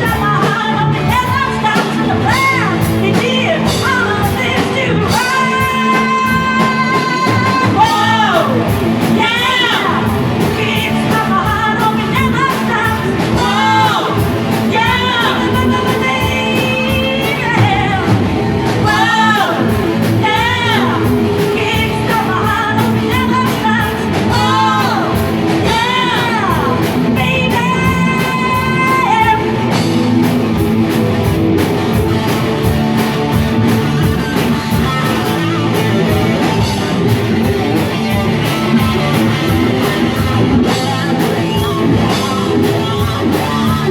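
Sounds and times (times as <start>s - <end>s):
person singing: 0.0s - 29.9s
rock band playing: 0.0s - 43.9s.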